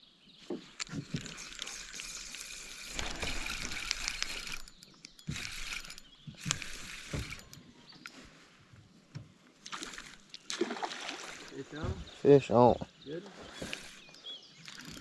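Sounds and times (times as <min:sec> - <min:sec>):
fishing reel whirring and clicking: 0:00.8 - 0:08.2, 0:13.6 - 0:15.0
river water running: 0:00.8 - 0:08.2, 0:09.6 - 0:15.0
soft handling thumps: 0:11.4 - 0:14.1.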